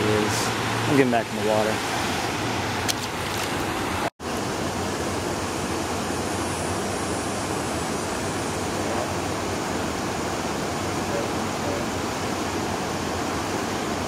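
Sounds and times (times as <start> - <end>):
water rushing over dam: 0.0 - 14.0.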